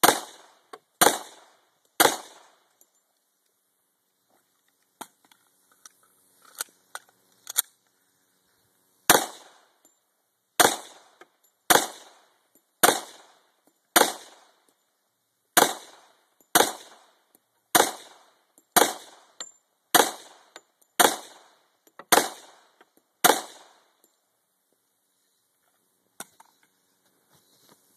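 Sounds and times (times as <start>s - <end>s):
pistol shots: 0.0s - 2.6s, 9.1s - 9.6s, 10.6s - 12.2s, 12.8s - 13.4s, 14.0s - 14.5s, 15.6s - 17.1s, 17.7s - 19.3s, 19.9s - 23.8s.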